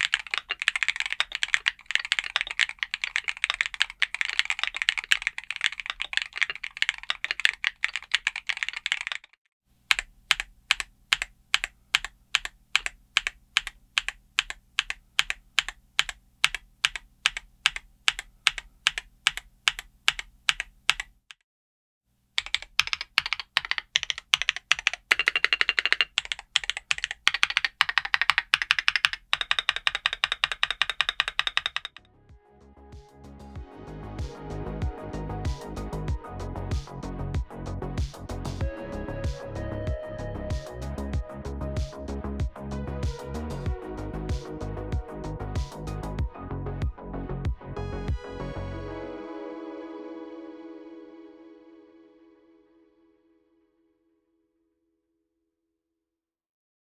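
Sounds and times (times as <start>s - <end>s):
keyboard typing: 0.0s - 21.4s, 22.4s - 32.0s, 45.5s - 46.2s.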